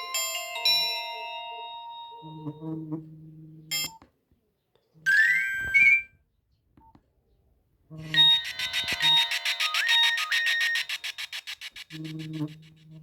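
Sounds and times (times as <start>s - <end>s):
pulsing electronic ringtone: 8.1s - 12.8s
electronic phone jingle: 8.2s - 12.1s.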